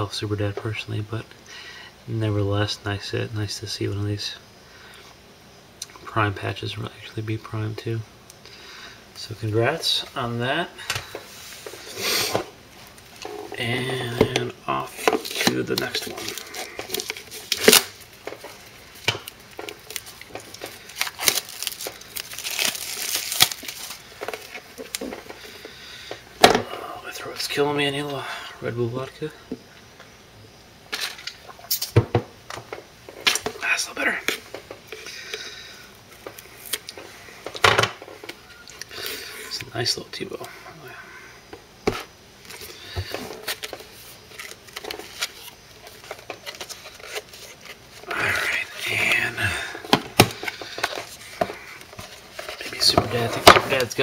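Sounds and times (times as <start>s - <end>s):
plastic packaging crinkling: 14.8s - 25.6s, 42.4s - 54.0s.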